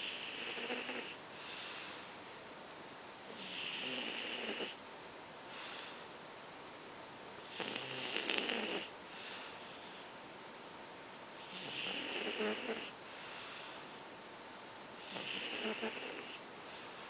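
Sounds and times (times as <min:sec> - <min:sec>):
pet snoring: 0:00.0 - 0:01.9, 0:03.3 - 0:04.8, 0:07.4 - 0:09.5, 0:11.4 - 0:13.8, 0:15.0 - 0:16.4
soft breathing: 0:00.0 - 0:02.4, 0:05.4 - 0:06.2, 0:08.8 - 0:10.3, 0:11.4 - 0:14.2, 0:15.1 - 0:17.0.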